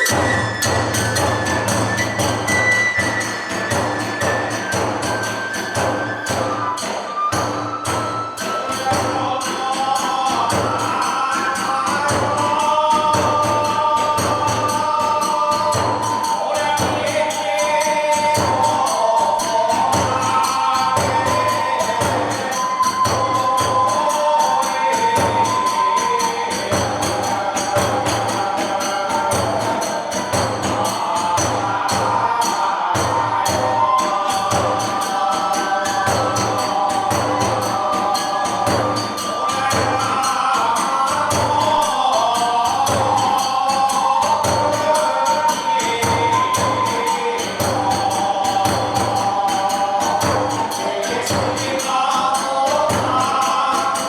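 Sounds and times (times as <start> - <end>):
taiko drum beat: 0.0 - 17.3, 18.1 - 51.8
hand cymbals clashing: 0.0 - 54.0
person singing: 0.0 - 54.0.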